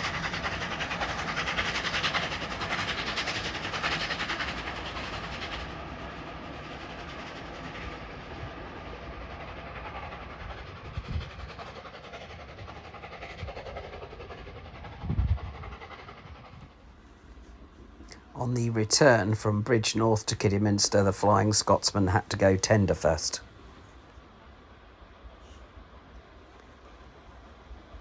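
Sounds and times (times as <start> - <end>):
steam train passing: 0.0 - 28.0.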